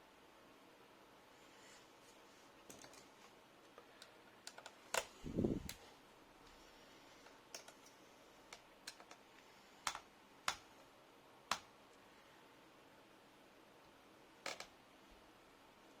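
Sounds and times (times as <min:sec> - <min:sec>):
tools clicking on laptop parts: 0:03.7 - 0:05.8, 0:07.2 - 0:10.9, 0:11.5 - 0:11.7, 0:14.4 - 0:14.8.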